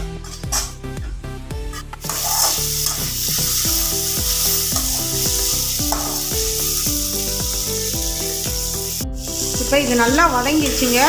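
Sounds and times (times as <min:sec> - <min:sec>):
vegetables sizzling in hot oil: 0:02.0 - 0:11.0.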